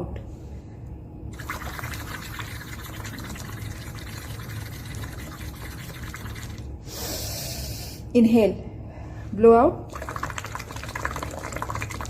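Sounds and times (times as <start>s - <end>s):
bubbling through a straw: 1.3s - 6.8s, 9.9s - 12.0s.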